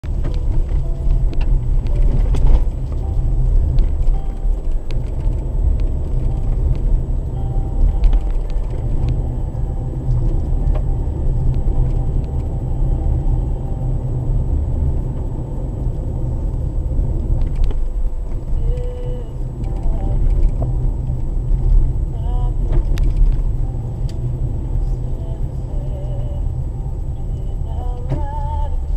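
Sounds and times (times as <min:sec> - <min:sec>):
car engine and tyre rumble: 0:00.0 - 0:28.9.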